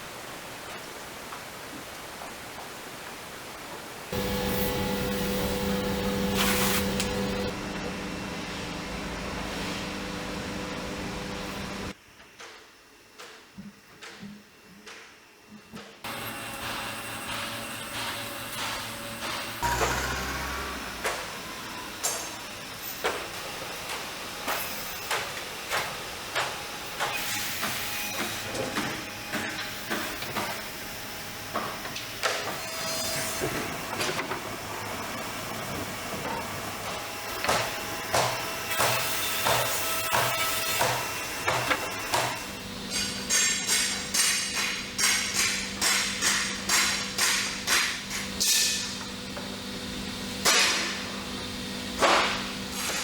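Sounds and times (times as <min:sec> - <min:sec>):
steady machine hum: 0:04.1 - 0:12.0, 0:16.1 - 0:24.5, 0:30.6 - 0:52.7
hammer strikes: 0:16.6 - 0:21.4, 0:37.4 - 0:48.9.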